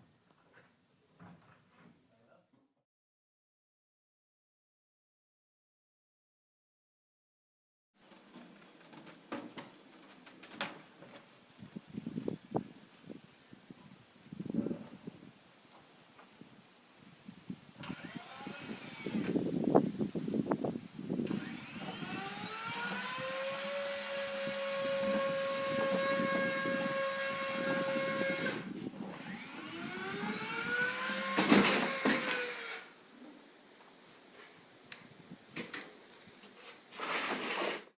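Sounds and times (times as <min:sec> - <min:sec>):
power tool motor whining: 0:17.8 - 0:19.4, 0:21.2 - 0:33.0.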